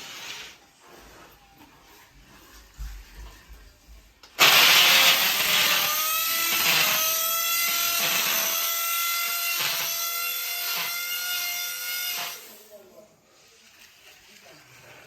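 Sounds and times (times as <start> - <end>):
power tool motor whining: 4.4 - 12.6.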